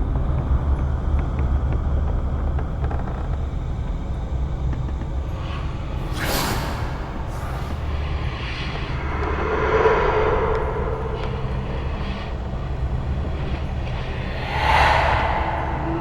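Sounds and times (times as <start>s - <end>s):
rushing whooshing noise: 6.0s - 8.1s, 14.2s - 16.0s
low rumbling drone: 13.8s - 16.0s.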